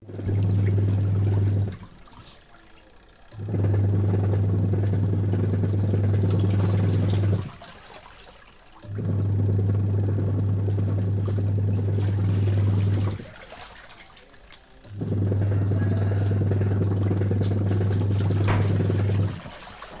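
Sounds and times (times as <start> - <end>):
factory machine humming: 14.8 - 19.4.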